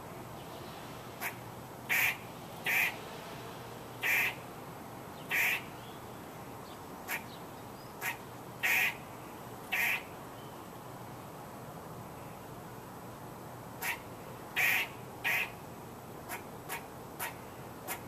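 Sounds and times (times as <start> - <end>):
squirrel calling: 1.2 - 3.0, 4.0 - 4.4, 5.2 - 5.9, 7.1 - 9.0, 9.7 - 10.1, 13.8 - 15.6, 16.3 - 18.0.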